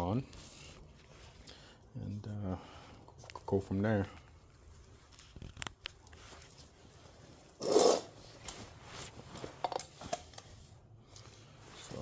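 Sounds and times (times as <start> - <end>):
short scraping rub: 7.6 - 9.3.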